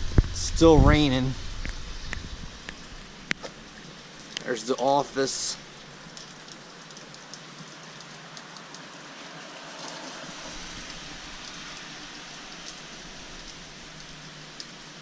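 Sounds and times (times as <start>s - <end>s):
heavy rain pouring: 0.0s - 15.0s
sharp drip ticks: 1.6s - 9.0s, 11.4s - 15.0s.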